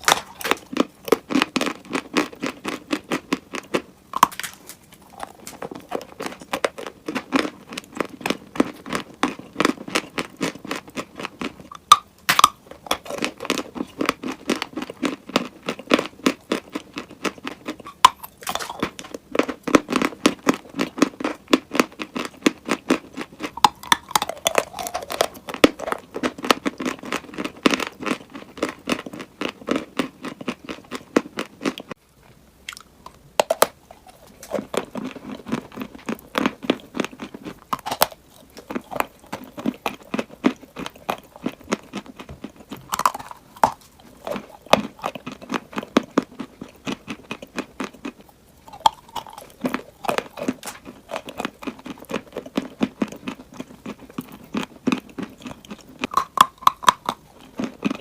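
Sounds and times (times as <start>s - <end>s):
crunchy chewing: 0.0s - 58.0s.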